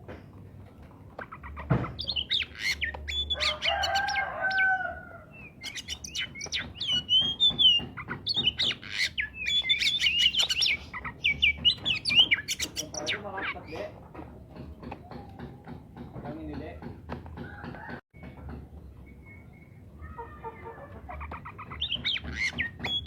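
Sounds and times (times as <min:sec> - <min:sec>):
bird whistles and chirps: 0:01.3 - 0:13.8, 0:21.5 - 0:23.0
rooster crowing: 0:03.3 - 0:05.3.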